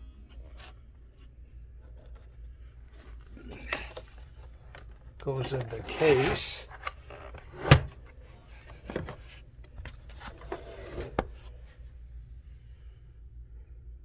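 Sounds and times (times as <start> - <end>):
faint low hum: 0.0 - 14.0
knocks and clicks of handling: 6.7 - 11.5.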